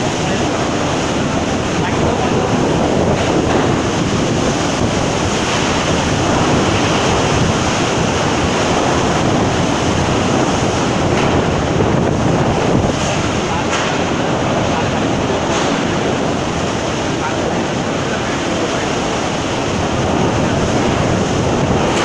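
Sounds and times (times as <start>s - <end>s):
rough sea: 0.0s - 22.0s
wind buffeting microphone: 0.0s - 22.0s
wind rushing: 0.0s - 22.0s.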